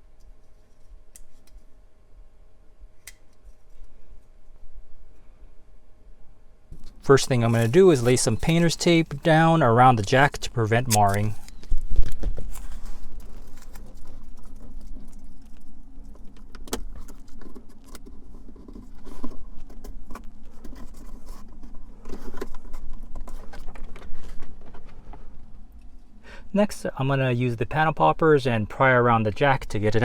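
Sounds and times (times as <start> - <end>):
tape crinkly rustles: 6.8 - 25.3.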